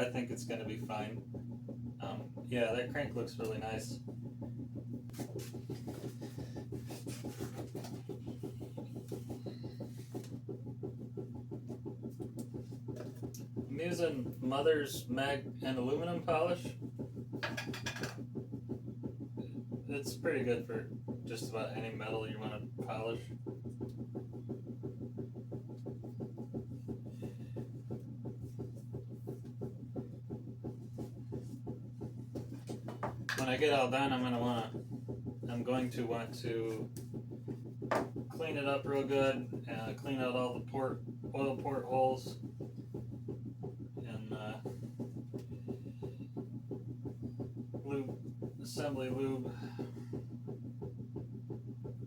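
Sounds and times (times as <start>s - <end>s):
steady low hum: 0.0s - 52.0s
cloth rubbing on metal: 5.1s - 10.5s.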